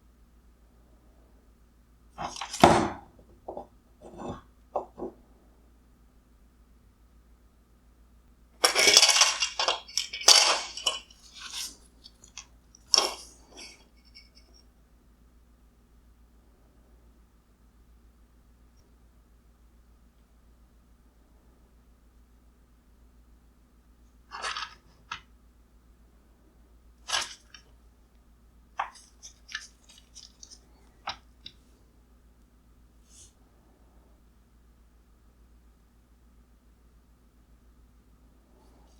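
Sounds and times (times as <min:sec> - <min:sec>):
faint steady hum: 0:00.0 - 0:38.9
plastic parts clicking and rustling: 0:02.2 - 0:02.9, 0:08.6 - 0:13.8, 0:24.3 - 0:25.2, 0:27.1 - 0:27.6, 0:28.8 - 0:31.6
hard parts clattering: 0:08.6 - 0:14.4.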